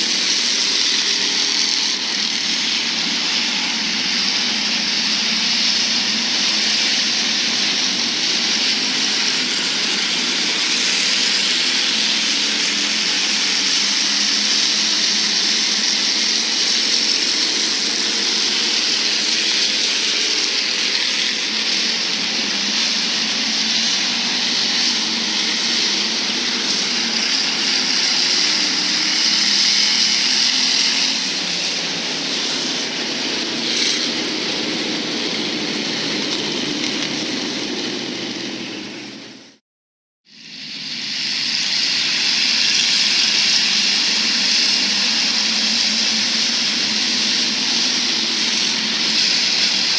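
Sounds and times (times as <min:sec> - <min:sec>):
strong hiss: 0:00.0 - 0:39.5, 0:40.3 - 0:49.9
race car engines droning: 0:00.0 - 0:39.6, 0:40.5 - 0:49.9.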